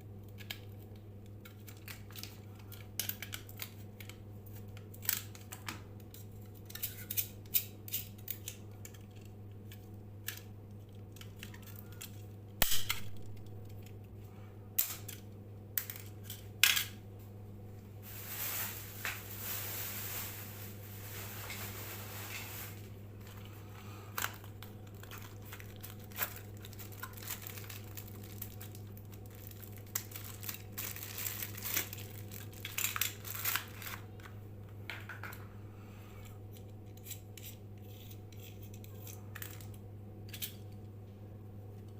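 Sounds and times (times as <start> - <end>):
steady low hum: 0.0 - 41.9
rubbing and rustling: 18.0 - 23.3.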